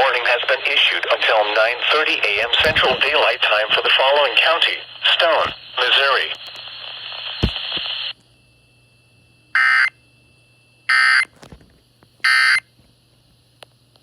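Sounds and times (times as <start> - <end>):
broadcast hiss: 0.0 - 8.2.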